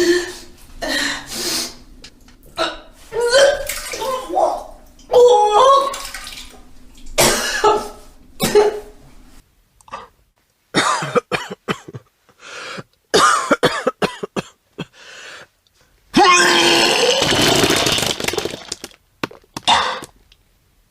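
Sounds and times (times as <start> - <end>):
person retching and gagging: 16.2 - 20.2.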